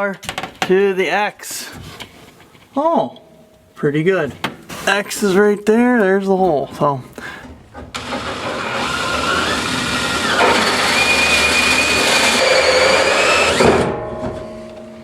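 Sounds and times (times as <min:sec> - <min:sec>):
power drill running: 0:08.0 - 0:13.9.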